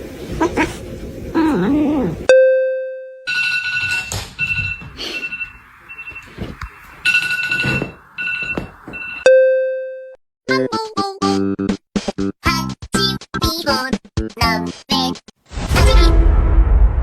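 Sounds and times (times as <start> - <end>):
high ringing tones: 2.3 - 10.2.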